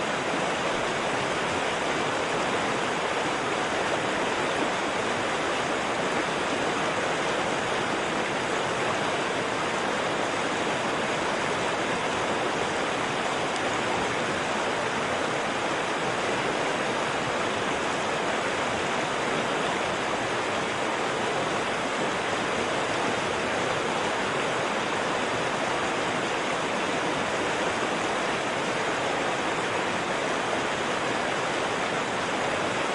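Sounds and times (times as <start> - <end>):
stream rushing over rocks: 0.0 - 32.9.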